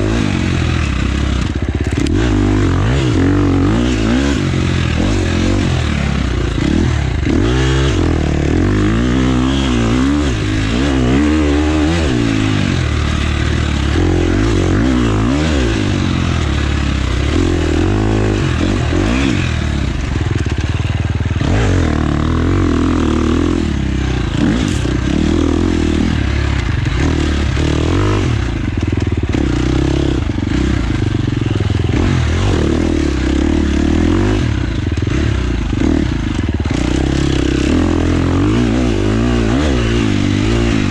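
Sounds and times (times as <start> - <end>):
dirt bike engine revving: 0.0 - 40.9.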